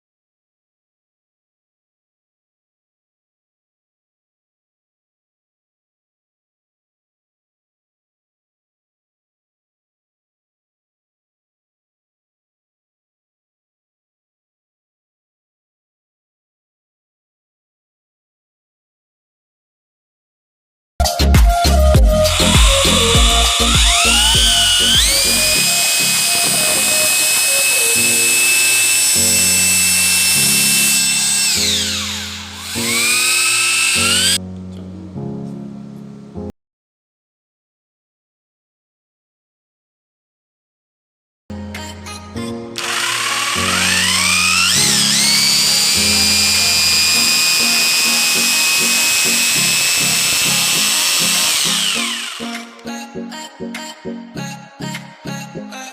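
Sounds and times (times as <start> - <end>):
background music with beat: 21.0 - 27.1
background music: 21.0 - 36.5, 41.5 - 55.9
drill motor whining: 21.6 - 34.4, 42.8 - 52.8.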